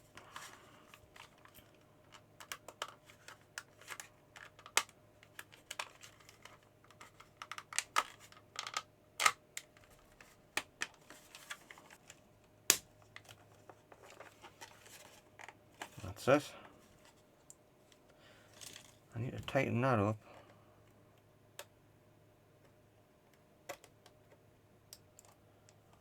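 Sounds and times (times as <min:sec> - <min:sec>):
sharp plastic snaps: 0:02.4 - 0:09.9, 0:12.7 - 0:13.4, 0:23.3 - 0:24.2
plastic clicks and taps: 0:22.6 - 0:25.8.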